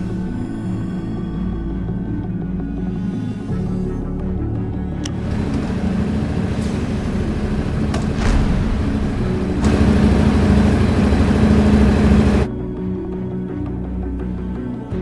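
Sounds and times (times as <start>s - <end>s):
motorcycle engine revving: 5.1s - 12.5s.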